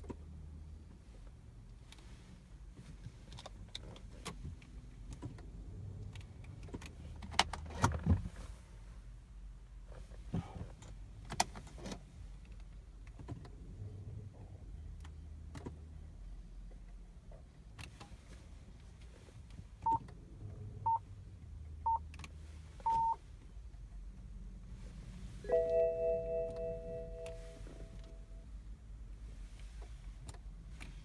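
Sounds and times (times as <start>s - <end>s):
multi-tone warning chime: 25.5s - 28.4s
faint low hum: 25.5s - 28.9s.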